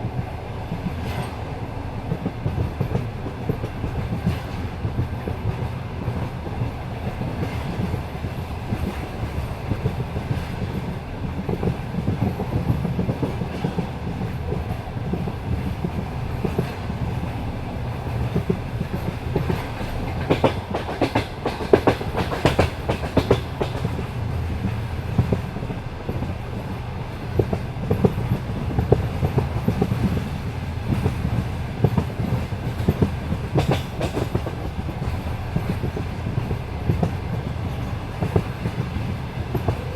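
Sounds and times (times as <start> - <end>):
train wheels clacking over rail joints: 0.7 - 39.9.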